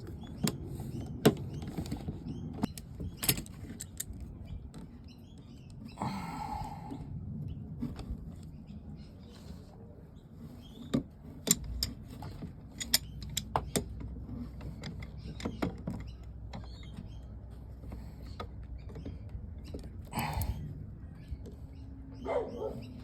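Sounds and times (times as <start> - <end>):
metal parts and cables clicking: 0.0 - 4.4, 10.9 - 16.7.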